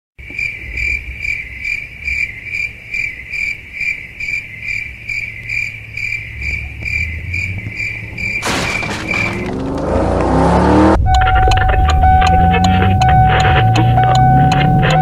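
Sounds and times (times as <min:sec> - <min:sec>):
cricket chirping: 0:00.2 - 0:09.6
low rumble: 0:06.4 - 0:15.0.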